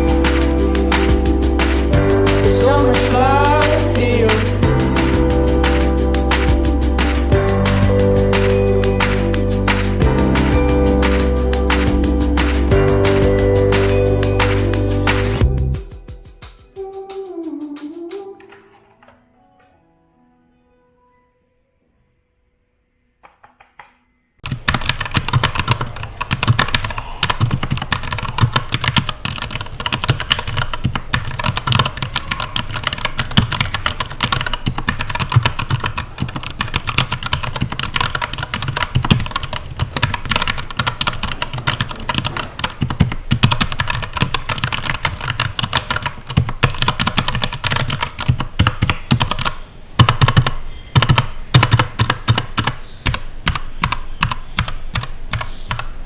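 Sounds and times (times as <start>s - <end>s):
fast mechanical keyboard typing: 24.4s - 56.0s.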